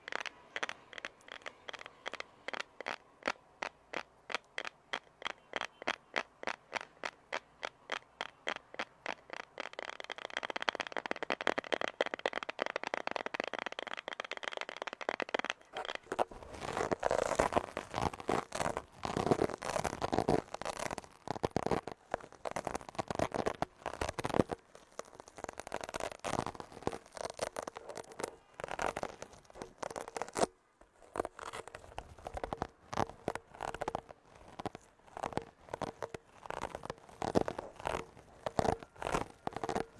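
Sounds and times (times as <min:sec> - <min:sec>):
tapping clicks: 0:00.0 - 0:30.5
continuous scratching: 0:00.0 - 0:39.9
crackling and scraping: 0:00.0 - 0:39.9.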